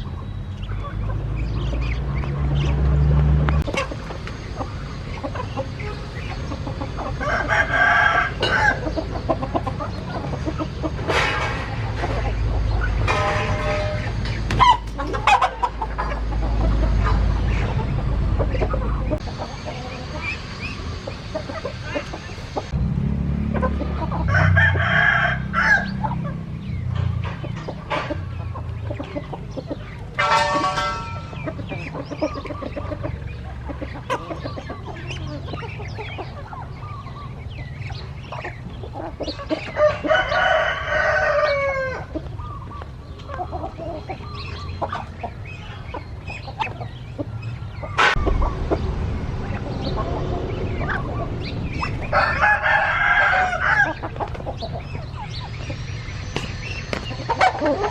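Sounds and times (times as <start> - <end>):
hens clucking: 0.0 - 22.8, 23.4 - 57.9
steady low rumble: 0.0 - 30.2, 42.0 - 57.9
roosters crowing: 0.0 - 57.9.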